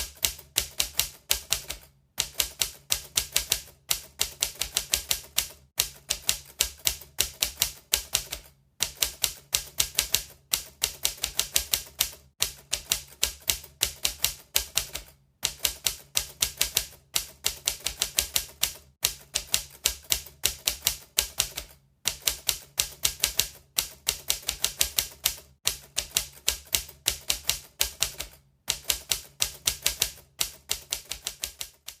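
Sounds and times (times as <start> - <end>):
typewriter keys clacking: 0.0 - 32.0.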